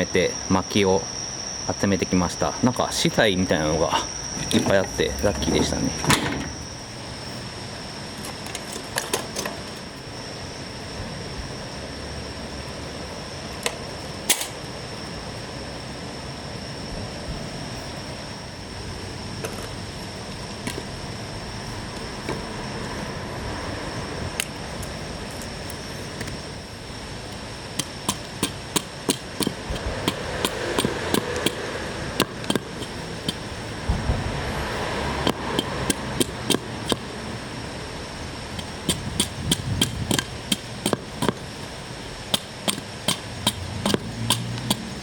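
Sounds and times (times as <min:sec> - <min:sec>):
steady high hum: 0:00.0 - 0:45.0.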